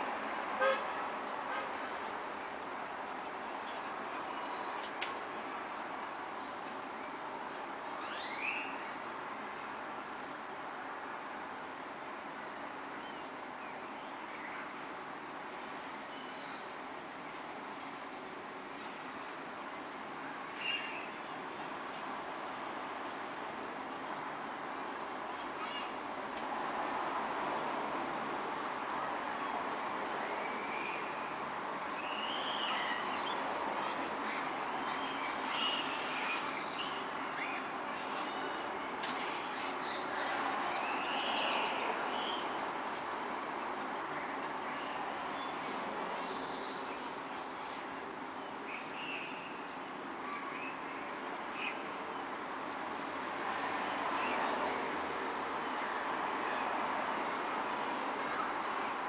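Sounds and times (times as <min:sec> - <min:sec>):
road traffic hiss: 0:00.0 - 0:59.0
birds chirping: 0:43.8 - 0:54.9.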